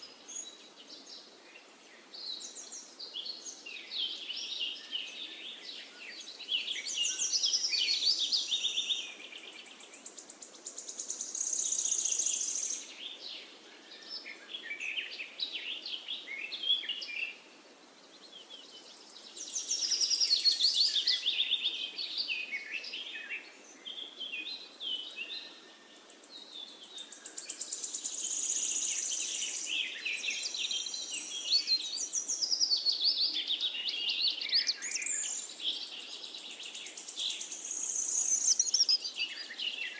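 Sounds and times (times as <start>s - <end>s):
faint steady hiss: 0.0s - 39.9s
finch singing trills: 26.4s - 39.9s.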